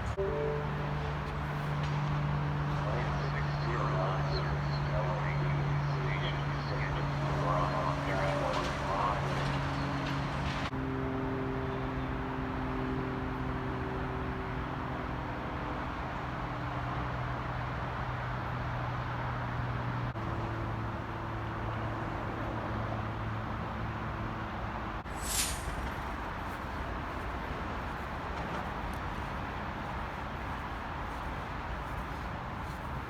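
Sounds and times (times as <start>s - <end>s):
diesel locomotive idling: 0.0s - 33.0s
short high hiss: 25.1s - 26.7s.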